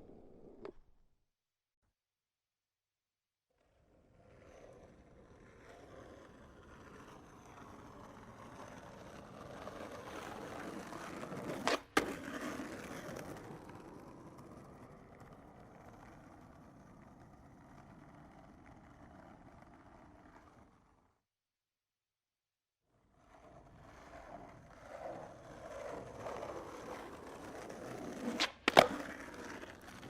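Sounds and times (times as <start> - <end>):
skateboard wheels rolling on pavement: 0.0 - 0.9, 3.6 - 21.4, 22.9 - 30.0
skateboard clack: 4.6 - 21.1, 23.3 - 30.0.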